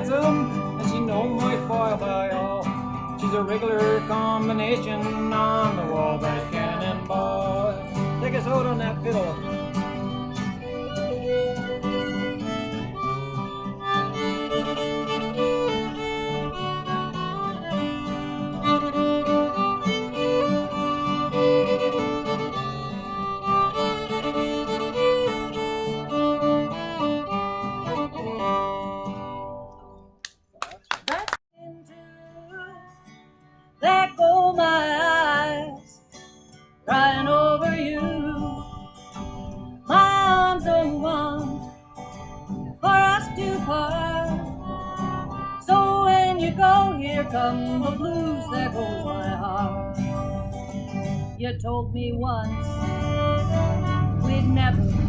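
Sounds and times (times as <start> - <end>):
live country band playing: 0.0 - 29.8, 41.2 - 51.2, 52.6 - 54.8
fiddle melody: 0.0 - 30.2, 37.9 - 55.0
wavering melodic phrases: 0.0 - 30.2, 37.9 - 55.0.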